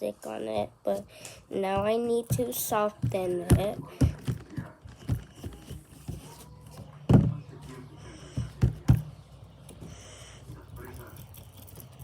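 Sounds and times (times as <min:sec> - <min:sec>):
dull knocks of pressing dough: 0:01.6 - 0:07.6, 0:08.3 - 0:09.2.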